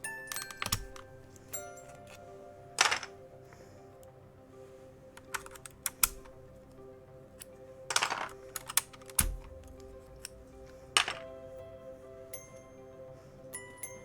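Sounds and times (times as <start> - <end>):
soft background music: 0.0 - 14.0
plastic keyboard clicks and clacks: 0.4 - 1.0, 2.8 - 3.2, 5.2 - 6.3, 7.9 - 9.6, 11.0 - 11.3.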